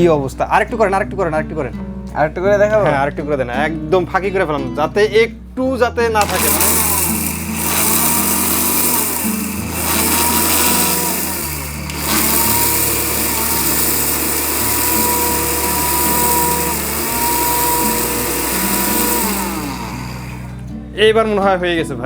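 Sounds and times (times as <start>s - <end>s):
blender motor whining: 6.2s - 20.7s
harsh grinding: 6.2s - 20.7s.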